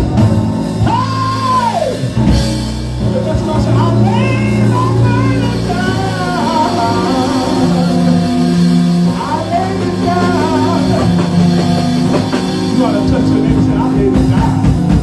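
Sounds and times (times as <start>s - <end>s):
band playing sustained chords: 0.0s - 15.0s
person singing: 3.0s - 15.0s.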